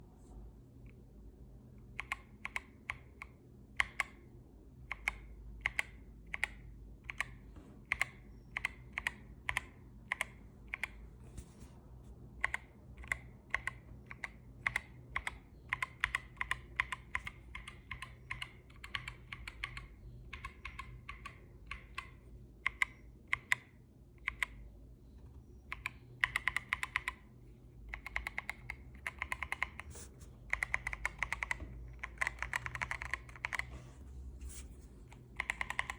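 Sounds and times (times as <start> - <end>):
mechanical keyboard keystrokes: 12.4 - 24.6, 25.7 - 27.2, 27.9 - 29.9, 30.5 - 33.7, 35.1 - 35.9.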